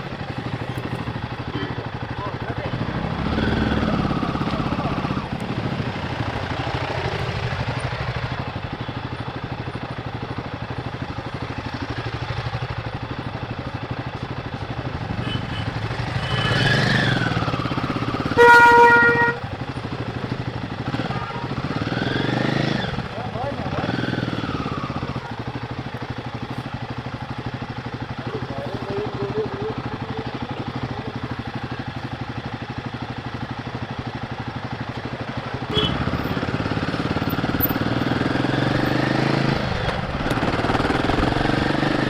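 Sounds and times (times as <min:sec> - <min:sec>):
motorcycle engine running: 0:00.0 - 0:42.0
vehicle horn blast: 0:15.1 - 0:16.8, 0:18.2 - 0:19.6, 0:35.7 - 0:36.3.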